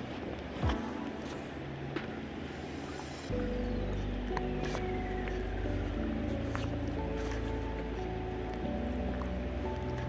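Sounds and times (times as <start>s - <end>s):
background music with held notes: 0.0s - 10.0s
steady low bass: 3.3s - 10.0s.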